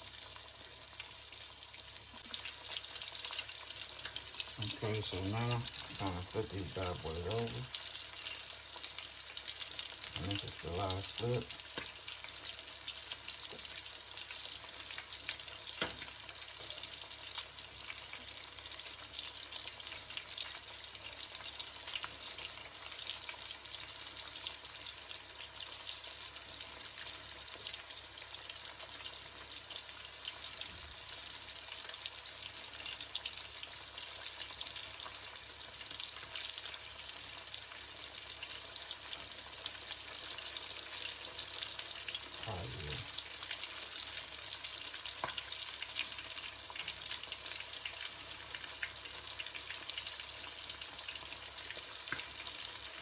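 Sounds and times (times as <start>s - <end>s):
fish frying in hot oil: 0.0s - 53.0s.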